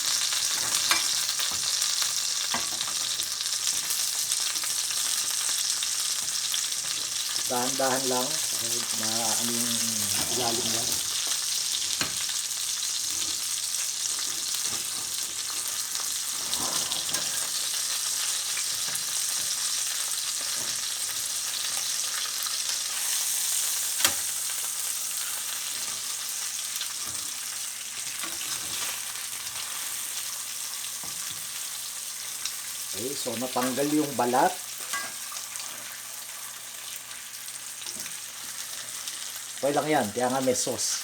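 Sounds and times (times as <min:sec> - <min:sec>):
fish sizzling in hot oil: 0:00.0 - 0:41.0
spatula scraping a pan: 0:12.9 - 0:19.7.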